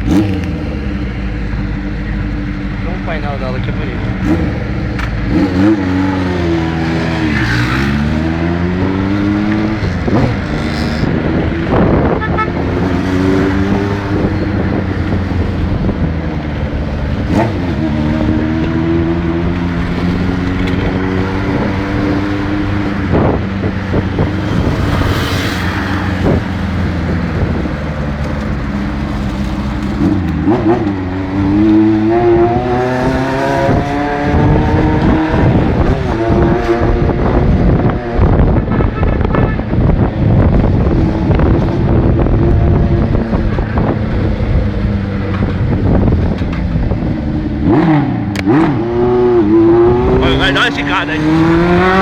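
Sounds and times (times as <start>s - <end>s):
motorcycle engine accelerating: 0.0s - 52.0s.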